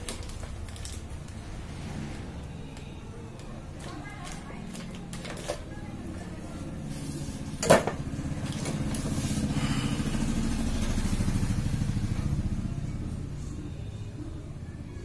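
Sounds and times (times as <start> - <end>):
pulsing engine rumble: 6.4 - 14.5.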